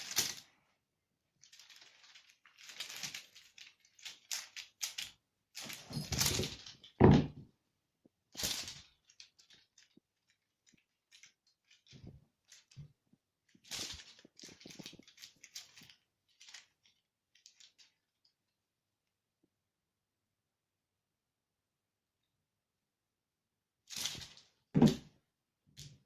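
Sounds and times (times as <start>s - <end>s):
toy rustling and clicking: 0.0s - 0.6s, 1.4s - 7.0s, 8.3s - 18.4s, 23.9s - 24.6s.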